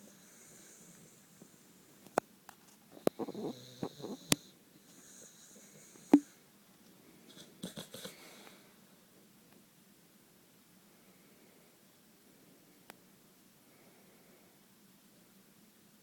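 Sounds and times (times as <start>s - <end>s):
dog snoring: 0.0s - 1.7s, 2.9s - 6.4s, 7.3s - 8.5s
dog snorting: 7.3s - 8.5s.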